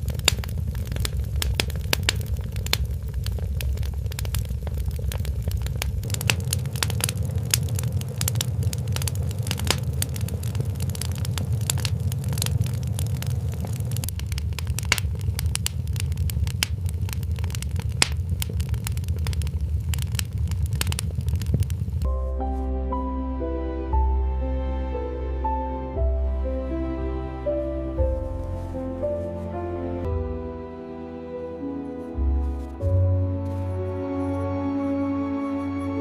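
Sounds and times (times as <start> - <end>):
wood fire crackling: 0.0 - 22.2, 27.2 - 36.0
low rumble: 0.0 - 35.0
gentle music: 22.1 - 36.0.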